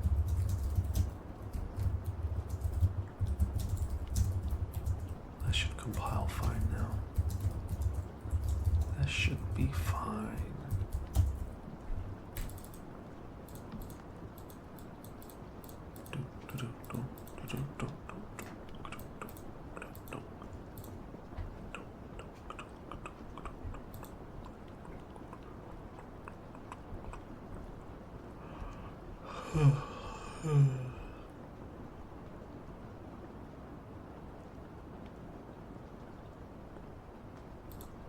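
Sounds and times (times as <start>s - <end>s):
computer keyboard typing: 0.0s - 11.6s, 12.3s - 21.0s, 21.6s - 27.2s, 37.7s - 38.0s.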